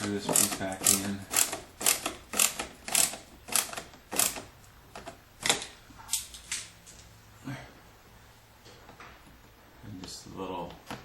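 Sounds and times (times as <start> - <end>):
screw turning with scratchy clicks: 0.0 - 5.7.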